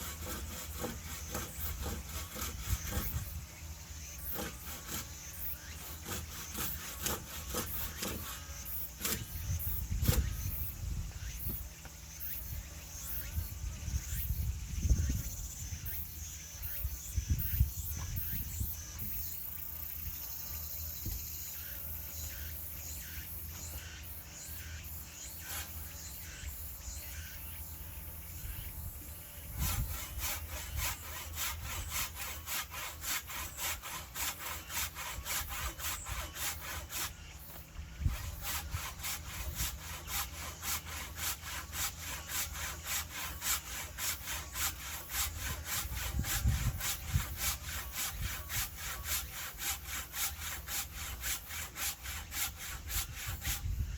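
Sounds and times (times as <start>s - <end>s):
hand saw cutting wood: 0.0s - 11.6s, 21.0s - 53.9s.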